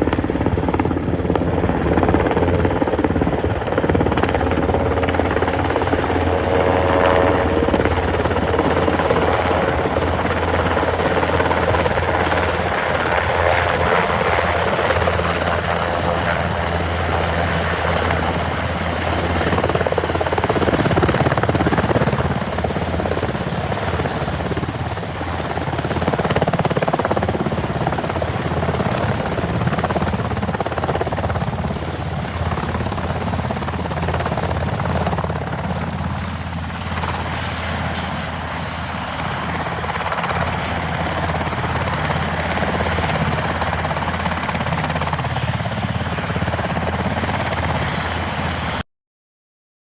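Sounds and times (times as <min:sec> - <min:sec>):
helicopter rotors and engines: 0:00.0 - 0:48.8.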